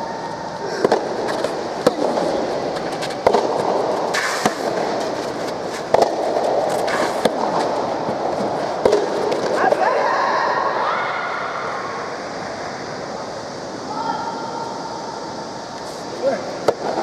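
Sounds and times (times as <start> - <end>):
steady background noise: 0.0 - 17.0
rackets striking rubber ball: 0.8 - 9.6.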